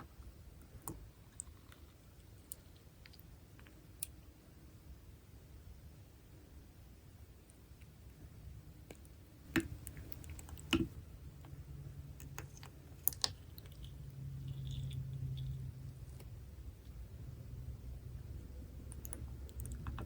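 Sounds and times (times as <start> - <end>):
soft low handling noise: 8.9 - 17.1, 18.2 - 20.0
sharp clicks and taps: 9.5 - 11.0.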